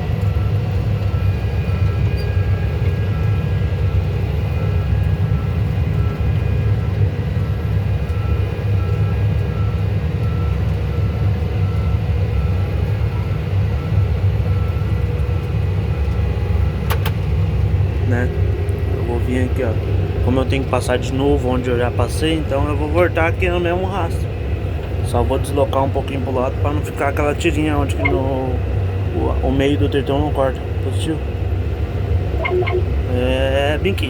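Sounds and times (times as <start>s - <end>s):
tractor diesel engine running: 0.0s - 34.0s
faint high beep: 28.0s - 28.3s, 32.4s - 32.9s.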